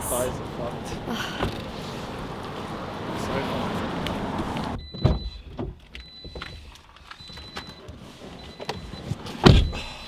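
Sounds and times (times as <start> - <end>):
knocks and rustles in car: 4.3 - 6.6, 7.2 - 10.0
thump: 5.0 - 5.7, 9.4 - 9.9.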